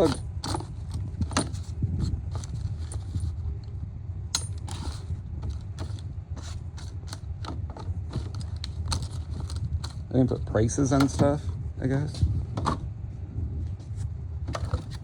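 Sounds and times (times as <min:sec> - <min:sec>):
steady low hum: 0:00.0 - 0:15.0
small items clicking in a drawer: 0:04.4 - 0:10.0.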